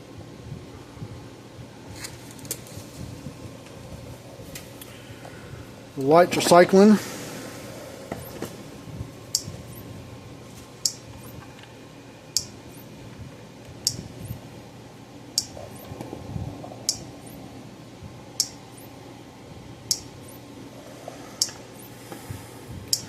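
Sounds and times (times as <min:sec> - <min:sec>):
electric fence charger clicking: 0:08.0 - 0:09.9, 0:10.8 - 0:14.5, 0:15.3 - 0:17.5, 0:18.3 - 0:19.0, 0:19.8 - 0:20.5, 0:21.4 - 0:23.0.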